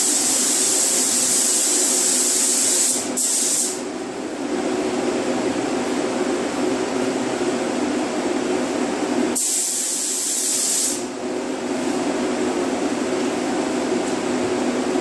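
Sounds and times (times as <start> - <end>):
paint spray gun hissing: 0.0 - 3.8, 9.4 - 11.1.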